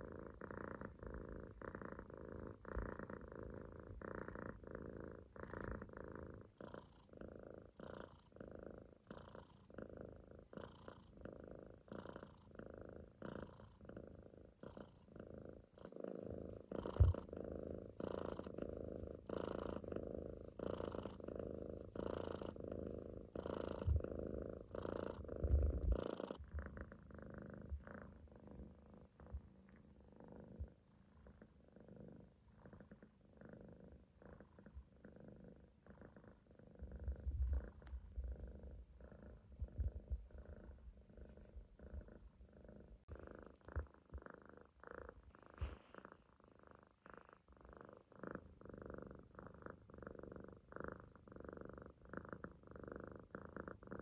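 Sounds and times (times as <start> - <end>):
kitten purring: 0.0 - 54.0
soft low bumps: 25.2 - 26.8.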